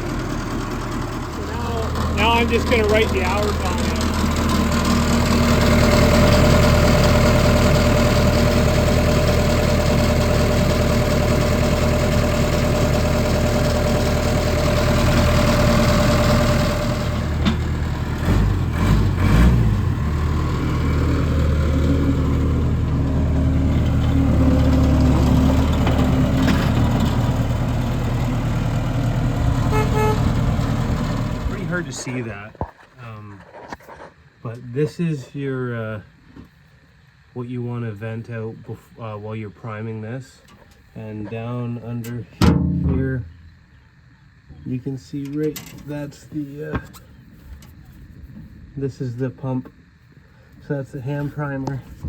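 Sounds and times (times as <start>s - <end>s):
diesel engine idling: 0.0s - 33.2s.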